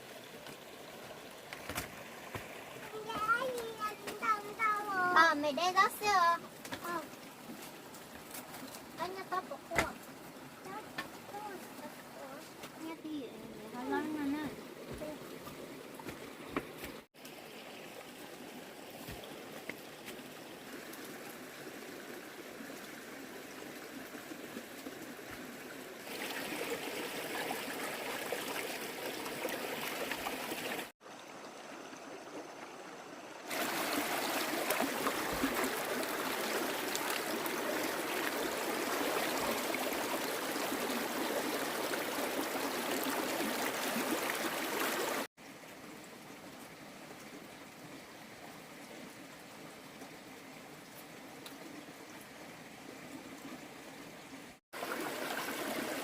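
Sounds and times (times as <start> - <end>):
rushing water hiss: 0.0 - 15.4, 33.4 - 47.8, 54.8 - 56.0.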